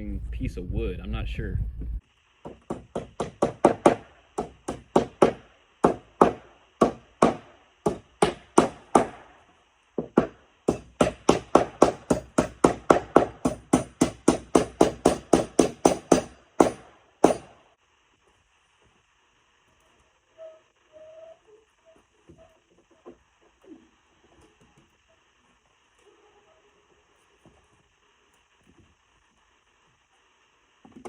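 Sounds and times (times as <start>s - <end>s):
hammer striking nails in wood: 2.4s - 9.3s, 10.0s - 17.6s.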